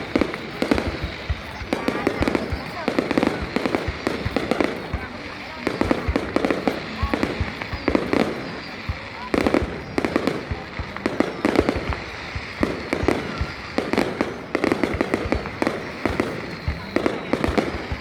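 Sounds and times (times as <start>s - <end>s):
fireworks bangs and crackles: 0.0s - 18.0s.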